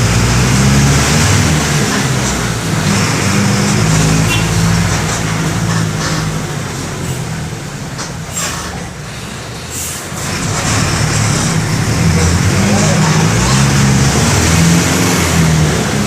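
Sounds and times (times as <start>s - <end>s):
bus diesel engine droning: 0.0s - 16.0s.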